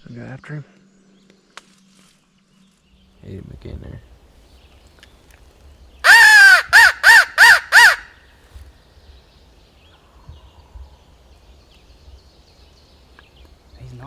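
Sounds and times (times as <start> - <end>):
crow call caws: 6.0 - 8.2.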